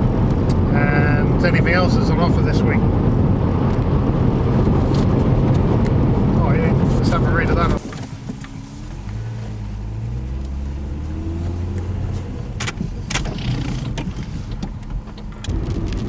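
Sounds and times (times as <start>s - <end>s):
car engine humming: 0.0s - 16.0s
sharp clicks: 12.5s - 16.0s.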